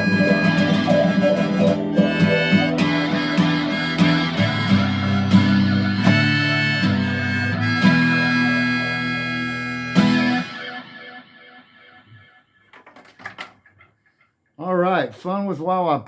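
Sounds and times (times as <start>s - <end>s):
guitar strumming: 0.0s - 12.4s
harmonica holding long notes: 0.0s - 12.5s.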